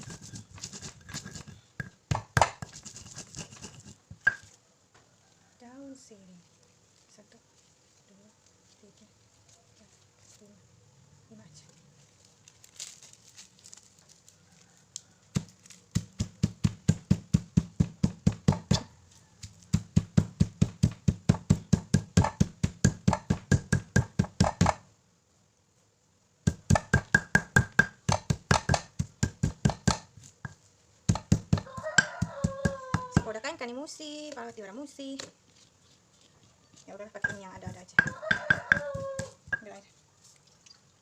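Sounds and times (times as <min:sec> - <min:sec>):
pestle pounding in a mortar: 0:00.0 - 0:04.5, 0:15.3 - 0:24.8, 0:26.5 - 0:33.4, 0:37.2 - 0:39.7.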